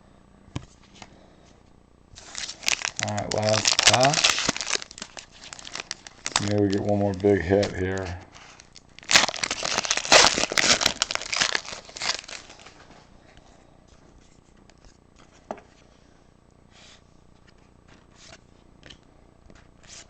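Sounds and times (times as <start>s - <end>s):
wrapper tearing and crinkling: 2.2s - 12.8s.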